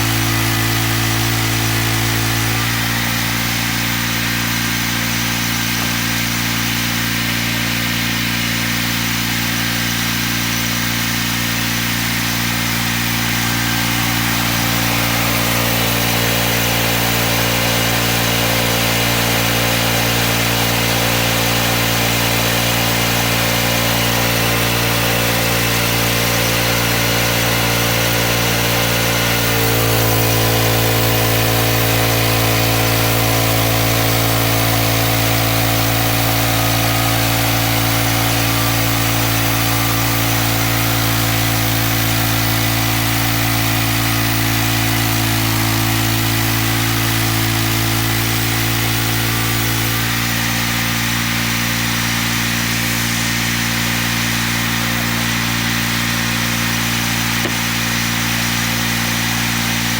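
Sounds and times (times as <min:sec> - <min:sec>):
sawmill engine running: 0:00.0 - 0:59.9.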